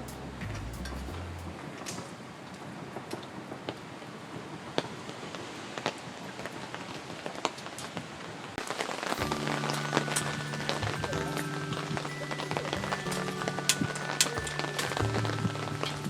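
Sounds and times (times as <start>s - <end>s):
rain falling steadily: 0.0s - 16.0s
background music: 8.6s - 16.0s.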